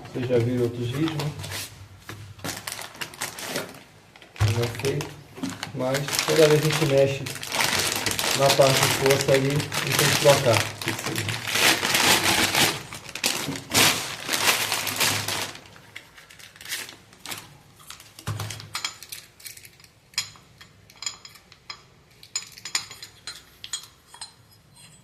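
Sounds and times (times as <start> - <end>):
handling rustle: 0.4 - 18.0.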